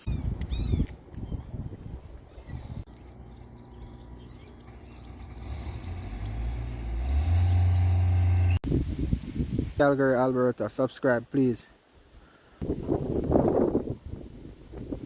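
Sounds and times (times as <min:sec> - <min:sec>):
vehicle engine humming: 0:02.9 - 0:08.6.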